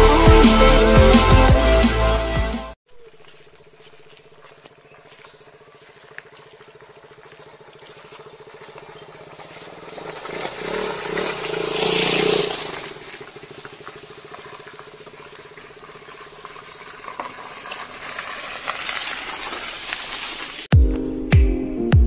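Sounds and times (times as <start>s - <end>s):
vehicle passing: 5.5s - 20.6s.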